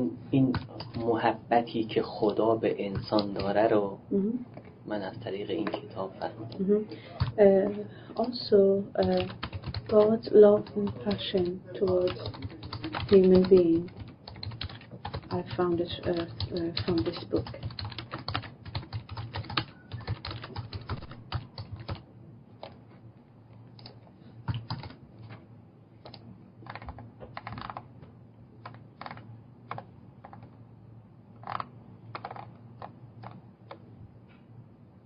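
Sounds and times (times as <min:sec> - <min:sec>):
typing on computer keyboard: 0:00.5 - 0:01.1, 0:02.9 - 0:03.6, 0:09.0 - 0:22.0, 0:23.8 - 0:25.4, 0:26.0 - 0:27.8, 0:28.6 - 0:30.6, 0:31.4 - 0:33.8.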